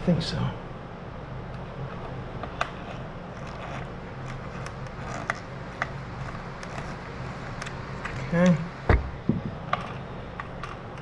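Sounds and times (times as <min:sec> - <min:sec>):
screwdriver clicks and scraping: 0:02.0 - 0:08.3, 0:09.7 - 0:11.0.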